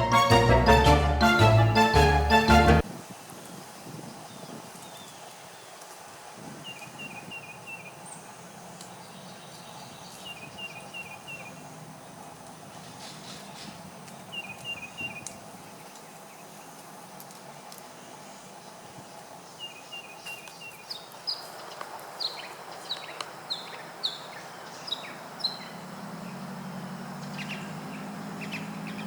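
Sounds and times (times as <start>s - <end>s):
outdoor background noise: 0.0s - 29.0s
small bird chirping: 6.6s - 16.8s, 17.5s - 29.0s.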